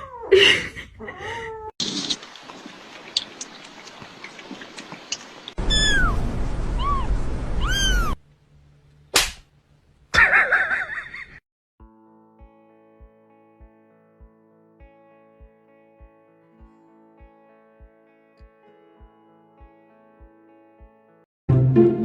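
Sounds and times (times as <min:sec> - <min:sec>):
kitten meowing: 0:05.6 - 0:06.2, 0:06.8 - 0:08.2.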